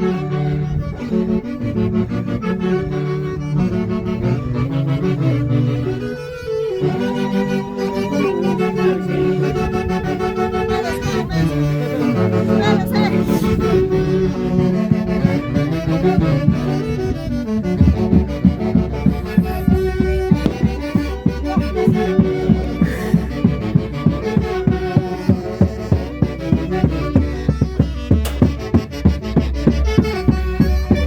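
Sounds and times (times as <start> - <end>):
folk orchestra playing: 0.0 - 31.0
wind instrument melody: 0.0 - 31.0
low bass beat: 12.1 - 31.0.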